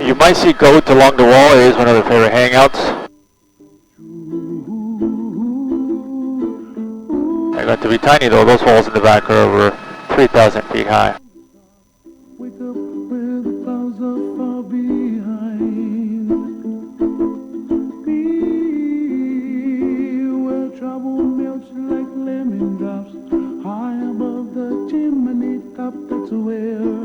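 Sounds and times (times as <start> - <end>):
ukulele music: 4.0 - 7.6, 12.4 - 27.0.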